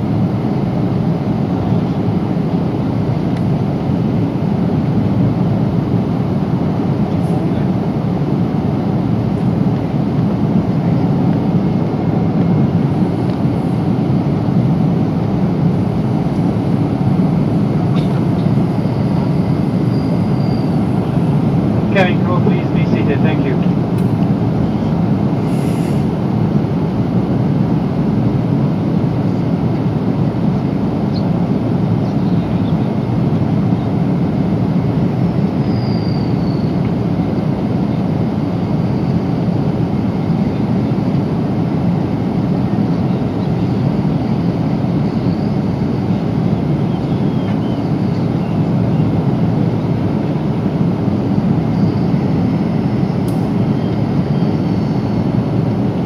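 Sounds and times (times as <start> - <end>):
airplane cabin noise: 0.0 - 56.0.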